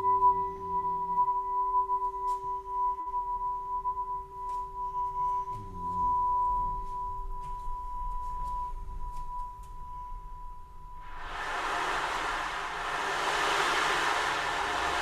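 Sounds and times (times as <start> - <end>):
short low sound: 11.0 - 15.0.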